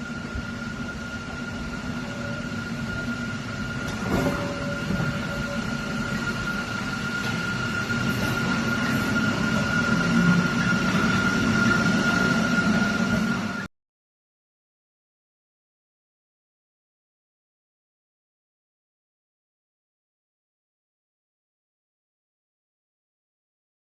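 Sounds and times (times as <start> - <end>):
train high whine and rumble: 0.0 - 13.7.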